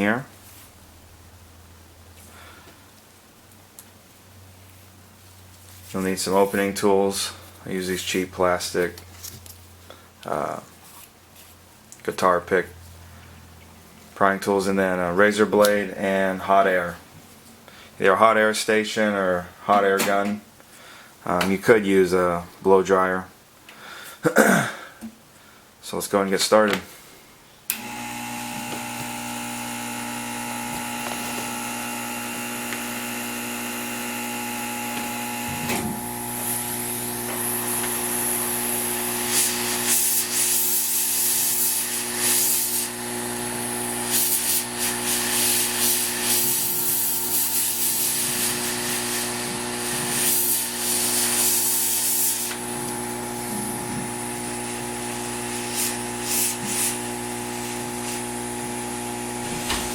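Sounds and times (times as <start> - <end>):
hot air blower humming: 27.7 - 59.9.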